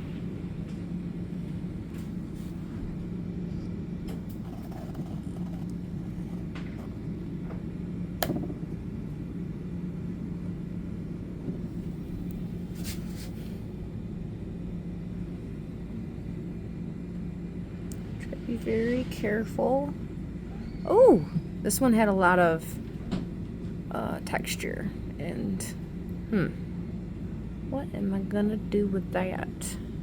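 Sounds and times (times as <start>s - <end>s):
low room hum: 0.0s - 30.0s.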